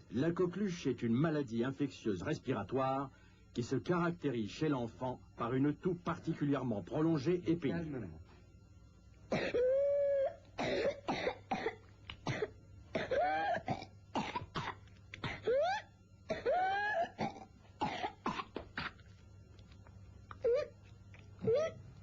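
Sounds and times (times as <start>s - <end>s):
boy coughing in spasms: 9.3s - 9.7s, 10.6s - 19.0s.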